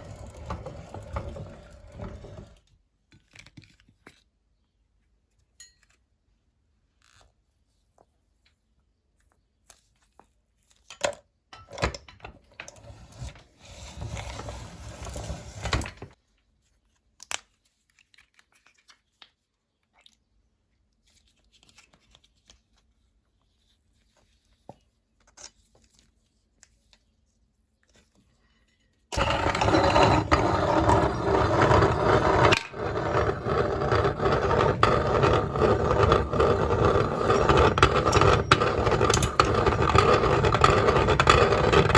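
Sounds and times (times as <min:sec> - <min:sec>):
objects scraping and knocking: 0:00.0 - 0:02.6, 0:11.6 - 0:16.2, 0:28.8 - 0:41.9
meat grinder running: 0:29.2 - 0:41.9.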